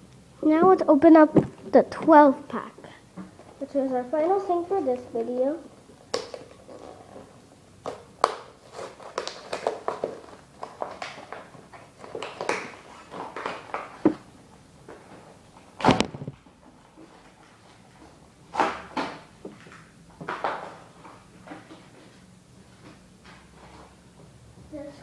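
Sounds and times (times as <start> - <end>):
sharp plastic crack: 6.1 - 6.6, 7.8 - 14.2, 15.8 - 16.4, 18.5 - 20.8
plastic packaging crinkling: 7.9 - 14.0.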